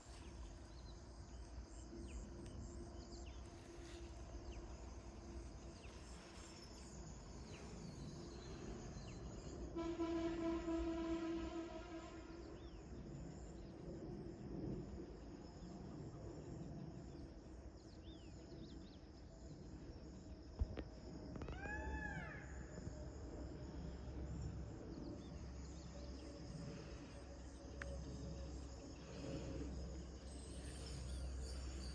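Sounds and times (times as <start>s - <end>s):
insect drone: 0.0s - 31.9s.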